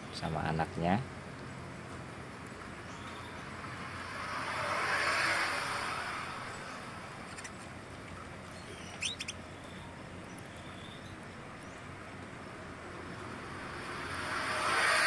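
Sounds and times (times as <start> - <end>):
steady background hiss: 0.0 - 15.0
broad rushing noise: 1.7 - 9.5, 11.3 - 15.0
canaries chirping: 8.6 - 9.8.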